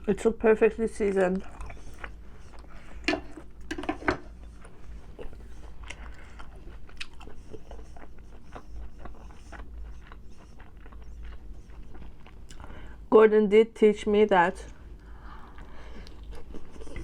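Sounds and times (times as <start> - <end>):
chewing with wet mouth smacks: 1.0 - 3.5, 4.5 - 12.8, 15.0 - 17.0.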